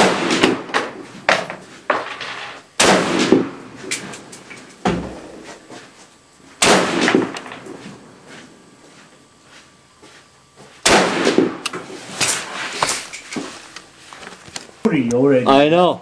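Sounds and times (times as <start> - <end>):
rifle shots with echo: 0.0 - 1.0, 2.8 - 3.7, 6.6 - 7.6, 10.8 - 11.6
sharp crack: 0.0 - 1.5, 2.8 - 5.2, 6.6 - 7.8, 10.8 - 13.2.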